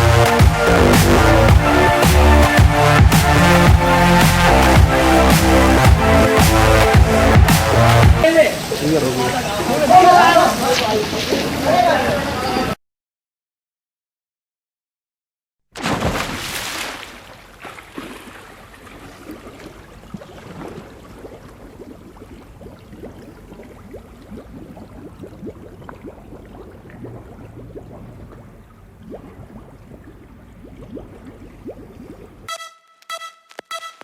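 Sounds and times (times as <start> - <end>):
pool water sloshing and bubbling: 0.0 - 12.6, 15.8 - 32.5
splash into water: 15.8 - 28.2.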